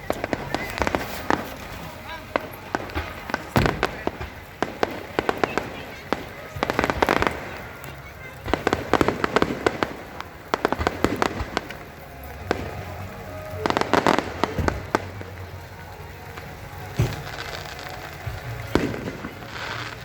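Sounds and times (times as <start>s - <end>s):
deep fireworks boom: 0.0s - 20.0s
fireworks bangs and crackles: 0.0s - 20.0s.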